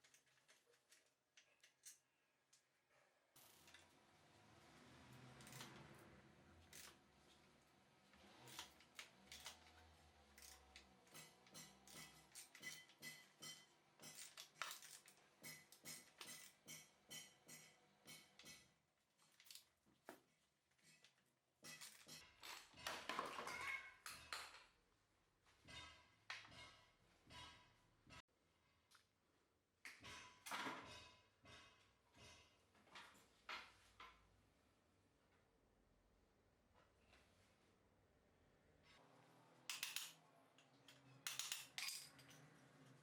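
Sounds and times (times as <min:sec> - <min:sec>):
metal parts and tools clinking: 0:00.0 - 0:02.7, 0:05.4 - 0:05.8, 0:06.6 - 0:07.0, 0:08.3 - 0:19.8, 0:20.8 - 0:24.7, 0:39.7 - 0:43.0.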